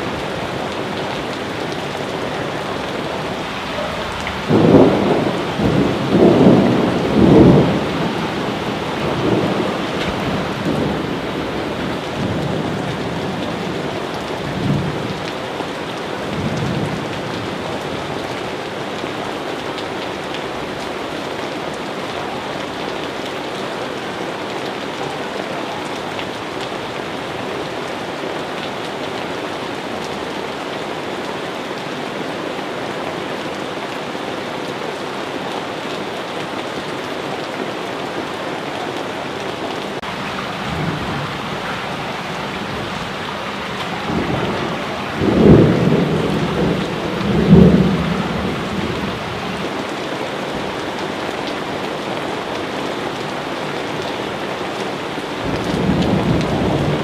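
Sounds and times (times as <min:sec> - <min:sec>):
dense rainfall: 0:00.0 - 0:57.0
low rumbles of thunder: 0:03.8 - 0:11.2, 0:40.4 - 0:49.7.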